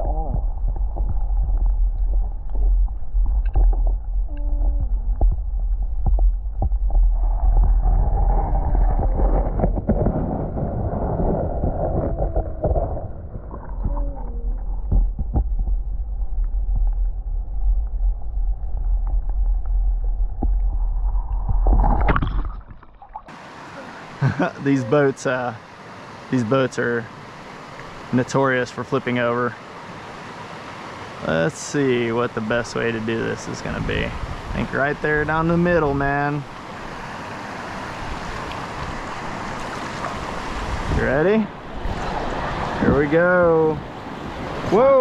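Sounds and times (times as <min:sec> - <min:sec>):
wind buffeting microphone: 0:00.0 - 0:22.2, 0:33.1 - 0:45.0
water rushing: 0:00.0 - 0:45.0.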